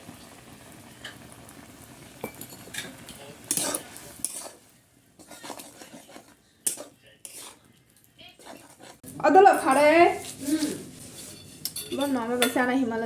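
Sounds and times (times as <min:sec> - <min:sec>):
utensils scraping dishes: 0:02.4 - 0:04.6, 0:05.2 - 0:07.6, 0:08.4 - 0:09.0, 0:09.6 - 0:12.7.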